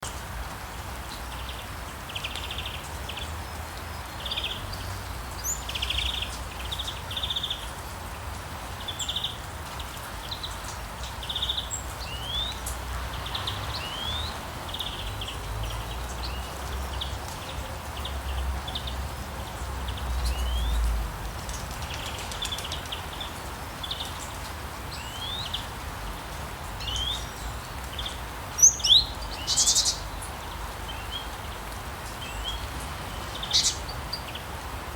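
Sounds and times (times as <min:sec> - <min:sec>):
rain hissing: 0:00.0 - 0:34.9
birds chirping and trilling: 0:10.3 - 0:19.0, 0:26.8 - 0:34.6.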